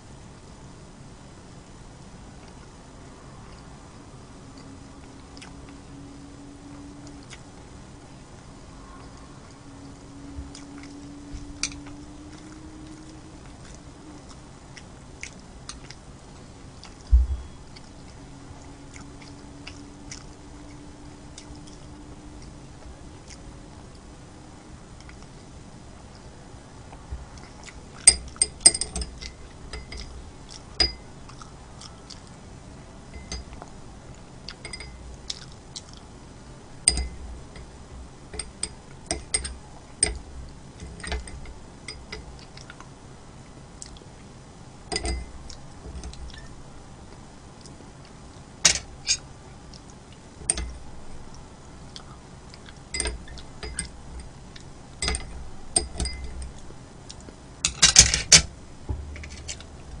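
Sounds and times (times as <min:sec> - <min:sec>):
chewing: 0:04.5 - 0:05.8, 0:07.0 - 0:07.5, 0:09.0 - 0:16.0, 0:16.6 - 0:17.1, 0:18.9 - 0:24.0, 0:26.9 - 0:28.4, 0:29.1 - 0:32.4, 0:33.2 - 0:36.1, 0:42.2 - 0:42.9, 0:43.8 - 0:44.2, 0:51.3 - 0:53.8
utensils clinking against dishes: 0:28.1 - 0:30.1, 0:33.1 - 0:33.6, 0:34.6 - 0:35.0, 0:36.9 - 0:37.7, 0:44.9 - 0:45.3, 0:48.6 - 0:49.2, 0:53.0 - 0:54.4, 0:55.0 - 0:56.5, 0:57.6 - 0:58.5.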